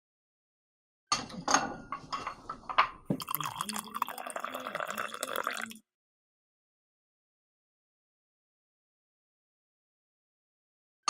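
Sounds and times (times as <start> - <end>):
coffee cup clinking: 3.1 - 5.8
liquid pouring into cup: 3.1 - 5.8.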